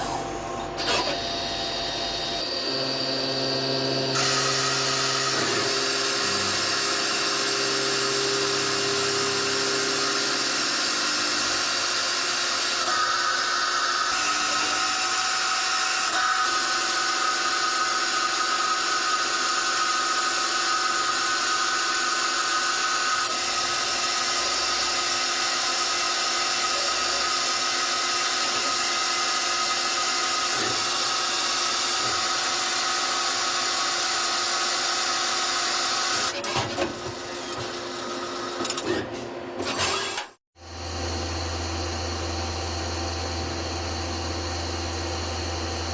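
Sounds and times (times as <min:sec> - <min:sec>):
lathe machine whine: 0:00.0 - 0:36.4.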